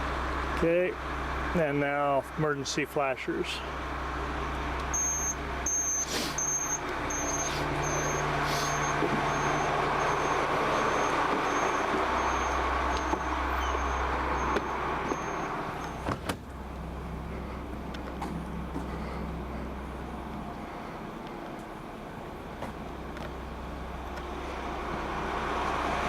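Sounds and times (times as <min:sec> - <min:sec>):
engine idling: 0:00.0 - 0:26.0
short high-pitched beeps: 0:04.9 - 0:15.5.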